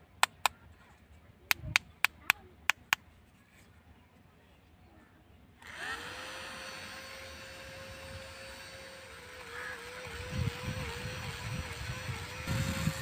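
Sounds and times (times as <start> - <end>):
small fan motor whine: 5.6 - 13.0.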